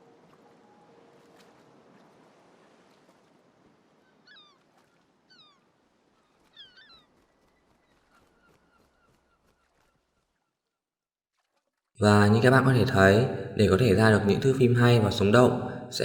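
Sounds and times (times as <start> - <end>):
bird chirps: 6.5 - 7.2.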